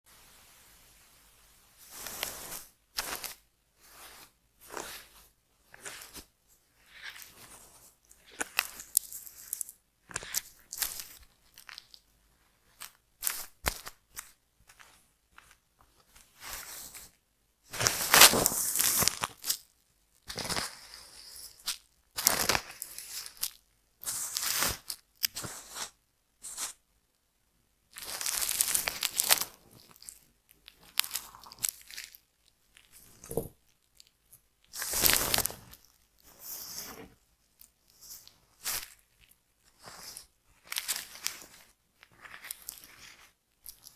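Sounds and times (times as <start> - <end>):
scratching scalp through hair: 1.9 - 6.3, 16.4 - 19.5.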